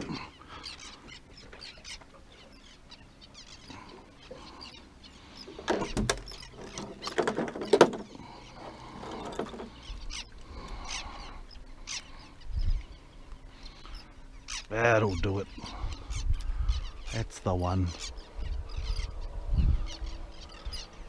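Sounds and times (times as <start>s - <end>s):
fishing tackle clicking and knocking: 5.6s - 8.2s.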